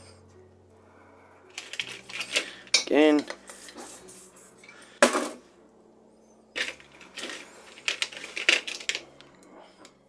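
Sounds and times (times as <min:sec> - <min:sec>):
small steel parts clinking: 0:01.5 - 0:03.4, 0:06.6 - 0:09.4.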